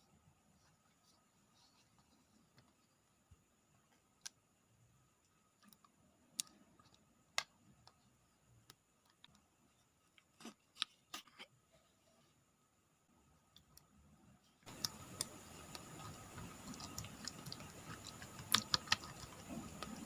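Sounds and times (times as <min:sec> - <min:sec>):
slime clicking and popping: 0:14.7 - 0:20.0.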